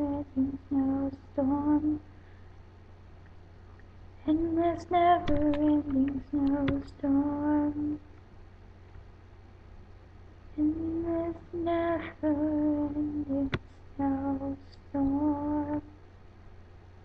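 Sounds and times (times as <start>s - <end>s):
girl singing wordless tune: 0.0s - 2.3s, 4.2s - 8.2s, 10.5s - 16.1s.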